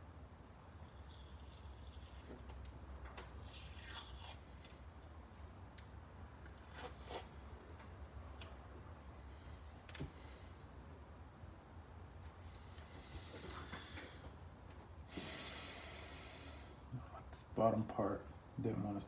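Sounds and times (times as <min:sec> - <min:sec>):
steady low hum: 0:00.0 - 0:19.0
tape tearing: 0:00.5 - 0:02.7, 0:03.3 - 0:05.1, 0:06.4 - 0:07.4.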